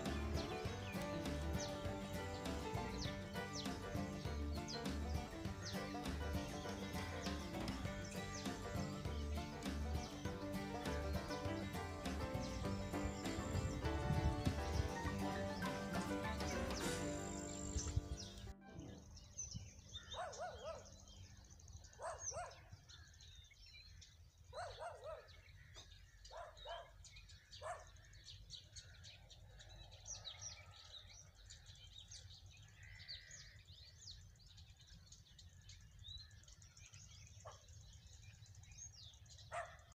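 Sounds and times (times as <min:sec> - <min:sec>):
small birds chirping: 0:00.0 - 0:40.0.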